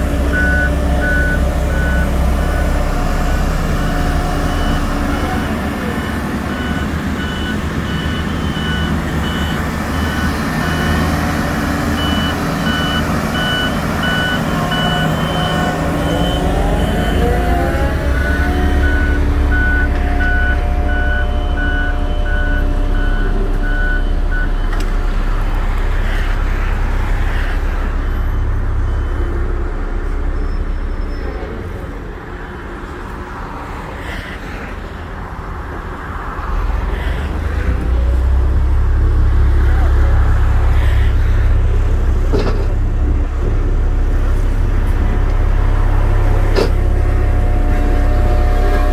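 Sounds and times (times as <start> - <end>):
truck reversing alarm beeping: 0.0 - 26.4, 27.9 - 31.4
diesel engine droning: 0.0 - 48.9.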